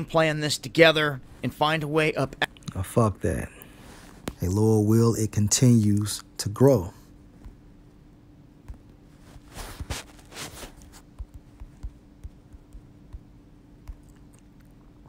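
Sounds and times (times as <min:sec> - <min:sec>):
soft rustling swishes: 0:09.0 - 0:11.9.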